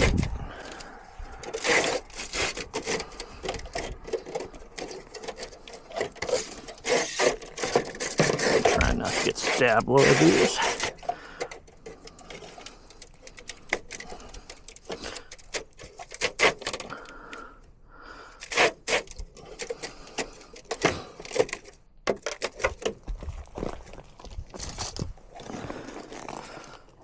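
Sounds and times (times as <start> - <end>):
metal clicks and rattles: 0.0 - 8.9, 10.7 - 17.4.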